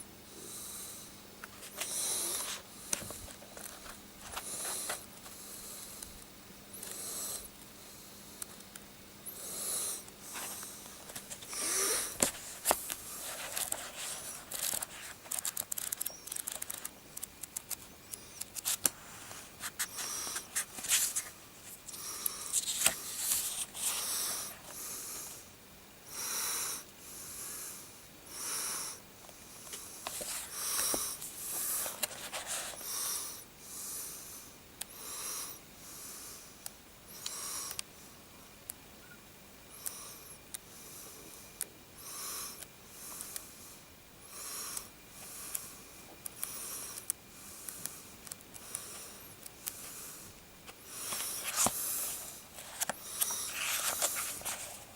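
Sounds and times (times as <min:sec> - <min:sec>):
heavy breathing: 0:00.5 - 0:03.5, 0:09.3 - 0:14.9, 0:19.0 - 0:25.5, 0:26.1 - 0:36.6, 0:39.8 - 0:54.9.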